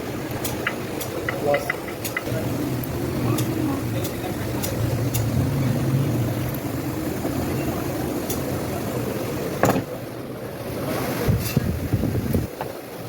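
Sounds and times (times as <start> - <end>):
tools clicking on metal: 0.4 - 2.3.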